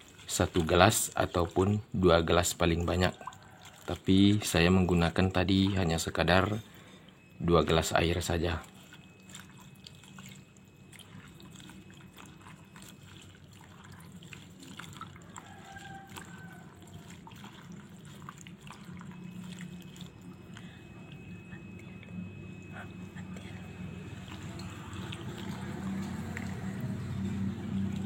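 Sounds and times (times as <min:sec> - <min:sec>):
water sloshing and dripping: 0:00.0 - 0:28.0
small wet ticks: 0:02.8 - 0:04.5, 0:08.2 - 0:22.1.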